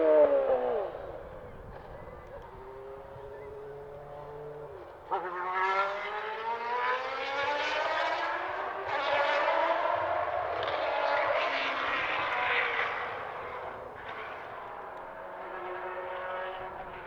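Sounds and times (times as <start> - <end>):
racing car engine accelerating: 0.0 - 17.0.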